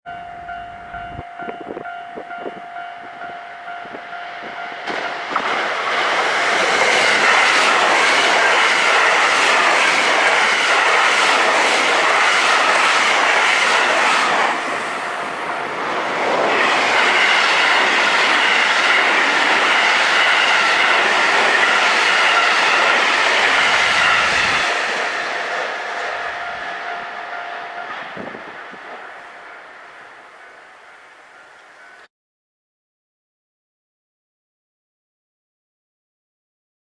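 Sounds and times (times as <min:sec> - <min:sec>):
level crossing alarm ringing: 0:00.1 - 0:11.4, 0:12.1 - 0:16.0, 0:16.6 - 0:32.1
train wheels clattering: 0:04.5 - 0:30.7.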